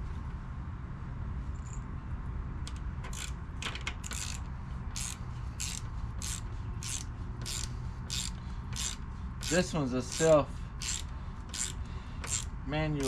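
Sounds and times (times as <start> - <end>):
socket ratchet clicking: 2.7 - 12.5.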